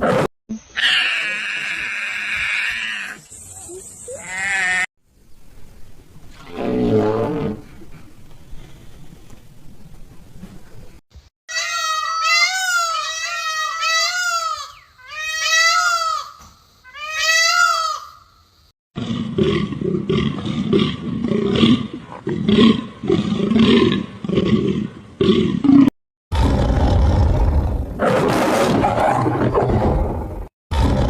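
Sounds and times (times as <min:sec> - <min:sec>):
animal wavering cry: 0:11.5 - 0:16.3.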